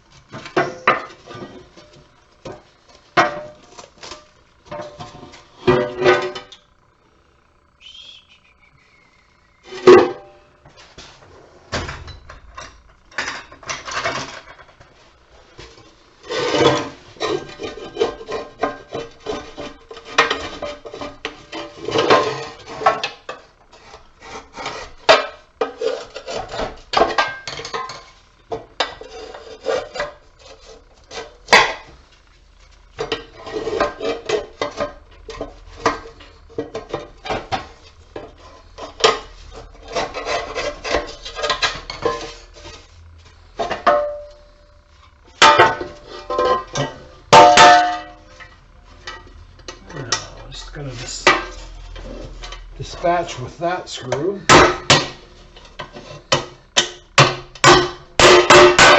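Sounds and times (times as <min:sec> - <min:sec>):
tools scraping and clinking metal: 0:33.0 - 0:54.6.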